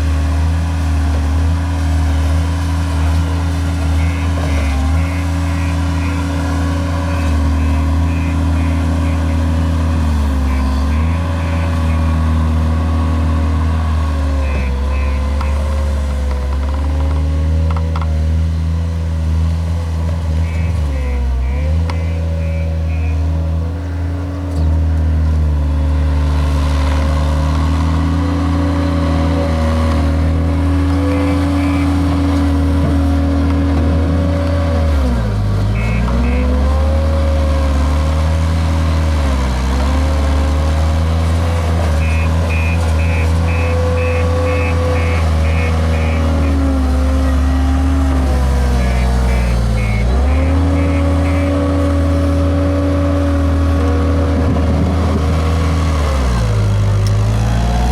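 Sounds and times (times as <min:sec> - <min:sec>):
loader engine running hard: 0:00.0 - 0:57.9
short high beeps: 0:42.0 - 0:47.3, 0:48.8 - 0:51.7.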